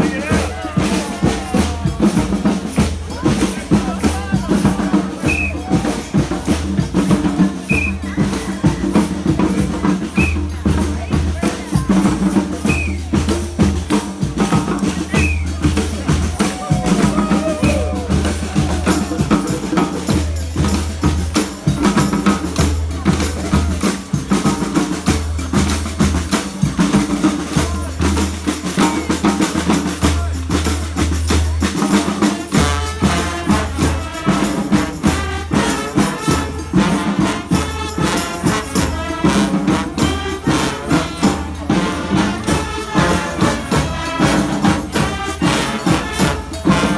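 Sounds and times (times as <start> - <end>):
drum and cymbal hits: 0.0 - 46.9
street brass band playing: 0.0 - 46.9.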